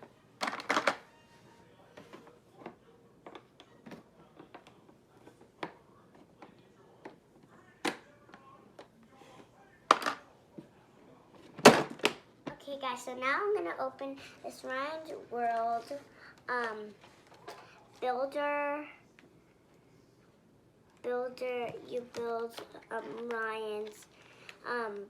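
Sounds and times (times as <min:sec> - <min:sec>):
toys and packaging rustling: 0:00.4 - 0:07.2, 0:13.5 - 0:18.2, 0:21.6 - 0:25.0.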